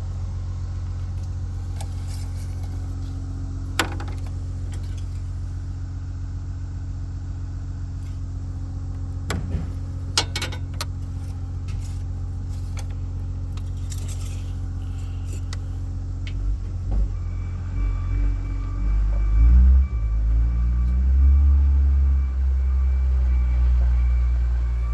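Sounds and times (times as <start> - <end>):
car engine idling: 0.0 - 24.9
low bumps: 8.0 - 24.9.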